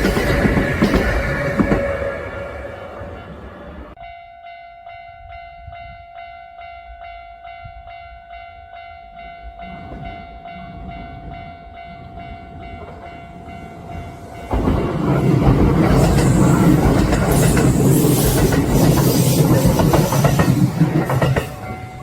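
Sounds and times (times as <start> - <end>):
train passing loudly: 0.0 - 4.0, 9.6 - 22.0
level-crossing warning bell: 0.0 - 22.0.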